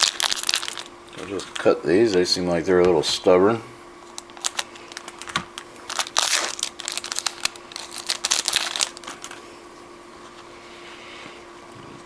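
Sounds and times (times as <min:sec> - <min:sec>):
plastic wrapper crinkling and tearing: 0:00.0 - 0:01.7, 0:04.0 - 0:09.4.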